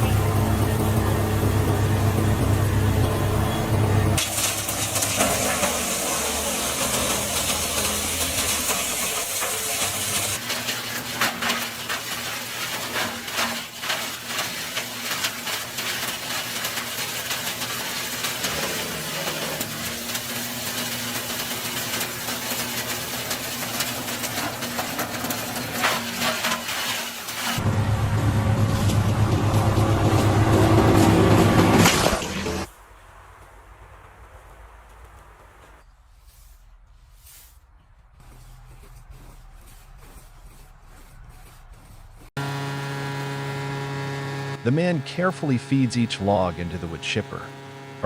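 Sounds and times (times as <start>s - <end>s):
wood chipper running: 0.0s - 32.7s, 42.4s - 48.0s.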